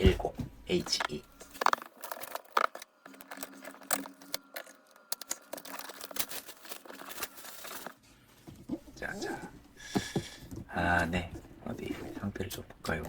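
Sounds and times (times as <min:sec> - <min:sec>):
plastic wrap crinkling and tearing: 0:01.4 - 0:08.0.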